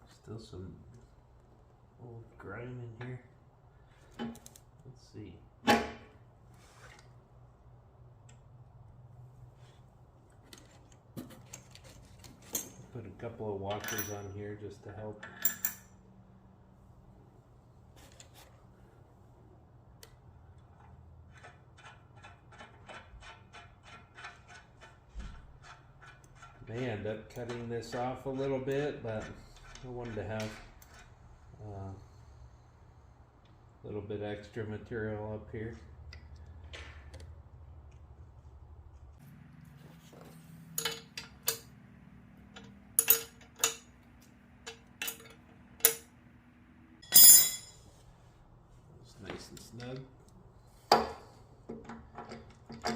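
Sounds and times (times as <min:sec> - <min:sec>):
metallic clinks of wrench and bolts: 0:13.7 - 0:14.4, 0:15.2 - 0:15.9, 0:40.7 - 0:41.7, 0:42.5 - 0:43.9, 0:44.7 - 0:46.1, 0:47.0 - 0:47.8.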